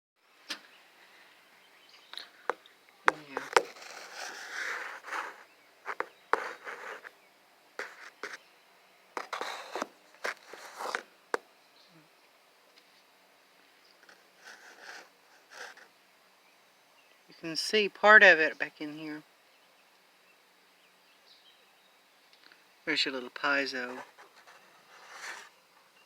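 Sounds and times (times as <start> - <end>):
scraping and rustling: 2.4 - 7.2, 7.8 - 8.4, 9.2 - 11.4, 14.0 - 15.9, 23.8 - 25.6.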